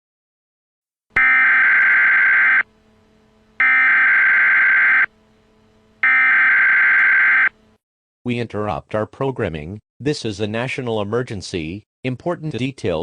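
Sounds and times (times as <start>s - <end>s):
faint hum: 1.1s - 7.8s
buzzy electronic data bursts: 3.6s - 5.1s.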